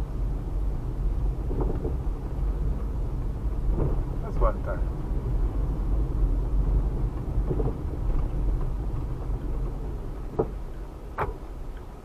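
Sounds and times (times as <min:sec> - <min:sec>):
car engine and tyre rumble: 0:00.0 - 0:12.0.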